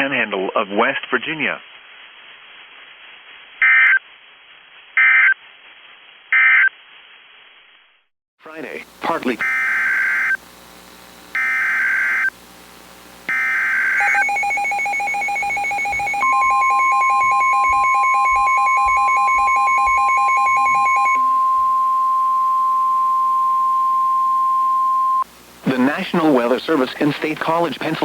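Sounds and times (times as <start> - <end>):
screeching digital data bursts: 9.4 - 10.4, 11.3 - 12.3, 13.3 - 25.2
steady warning alarm tone: 9.4 - 10.4, 11.4 - 12.3, 13.3 - 25.2
pulsing two-tone alarm beep: 13.3 - 25.2.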